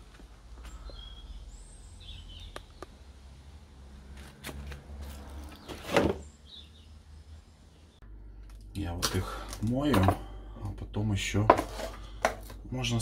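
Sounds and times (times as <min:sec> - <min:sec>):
faint bird chirps: 0:00.6 - 0:02.9.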